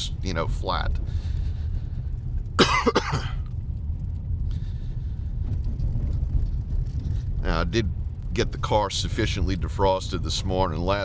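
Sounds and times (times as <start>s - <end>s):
car driving rumble: 0.0s - 11.0s
person coughing: 2.6s - 3.4s.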